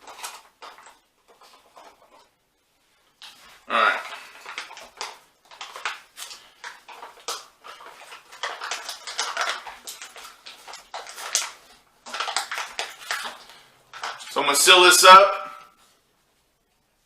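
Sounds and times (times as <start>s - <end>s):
spoon scraping in foil pouch: 3.2s - 14.4s.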